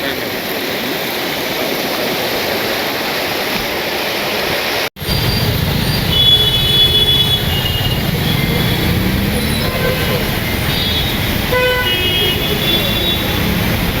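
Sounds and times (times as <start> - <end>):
road traffic rush: 0.0 - 14.0
vehicle horn toots: 5.2 - 13.6.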